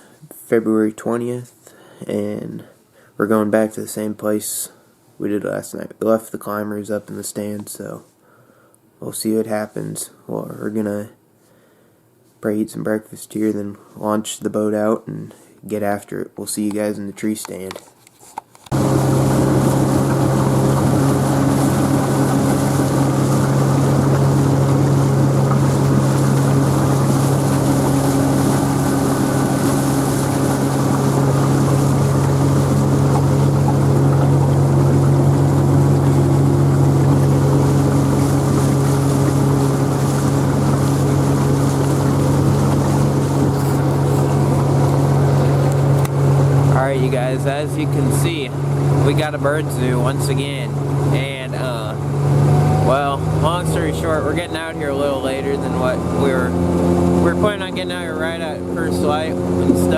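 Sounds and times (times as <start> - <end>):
boat motor droning: 18.7 - 59.9.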